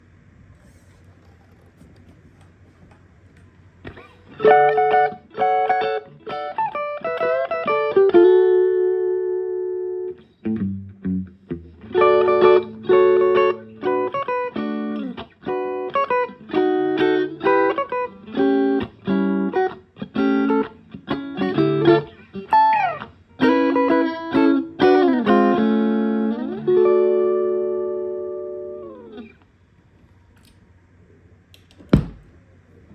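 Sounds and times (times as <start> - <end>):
clean electric guitar: 2.9 - 29.6.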